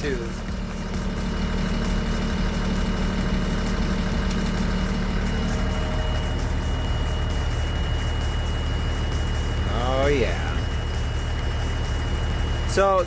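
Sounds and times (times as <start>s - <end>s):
truck diesel engine idling: 0.0s - 13.0s
thin high tone: 0.2s - 10.6s.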